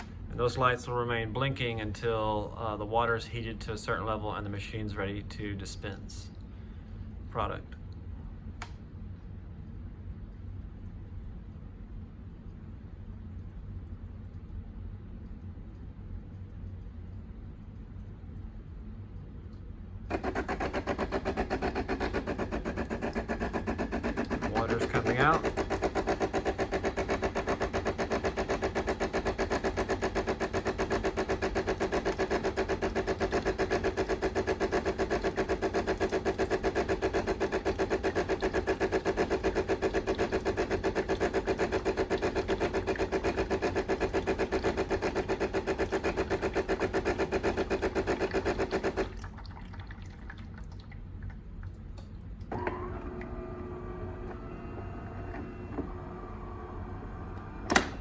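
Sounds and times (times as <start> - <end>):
espresso machine pump buzzing: 20.1 - 49.2, 52.5 - 58.0.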